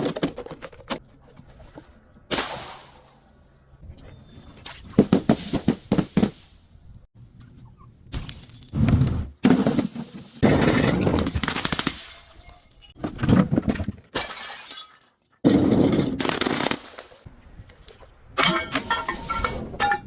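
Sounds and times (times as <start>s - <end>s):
glass crunching and shattering: 10.5s - 13.0s, 14.1s - 17.3s.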